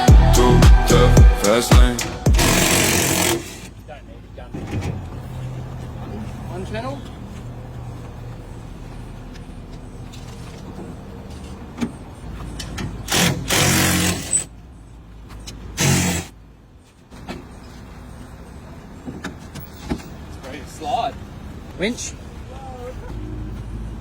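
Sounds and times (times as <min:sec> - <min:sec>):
short mechanical whirs: 0:02.0 - 0:03.8, 0:13.0 - 0:14.5, 0:15.8 - 0:16.3.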